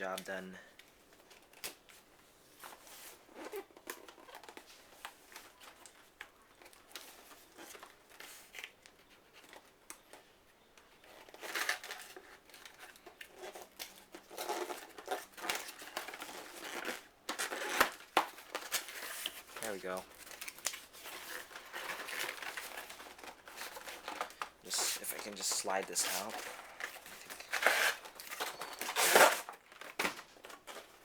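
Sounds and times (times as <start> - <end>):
packaging crinkling and tearing: 11.1 - 31.0.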